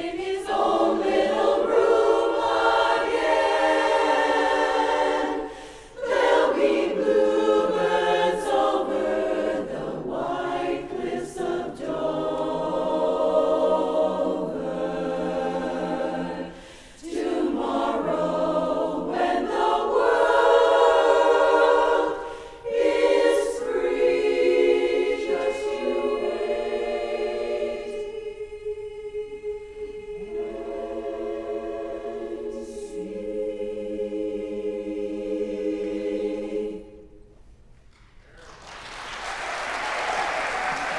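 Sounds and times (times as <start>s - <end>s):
chorus singing a cappella: 0.0s - 38.2s
singers breathing: 5.5s - 6.0s, 16.5s - 17.0s, 22.2s - 22.7s.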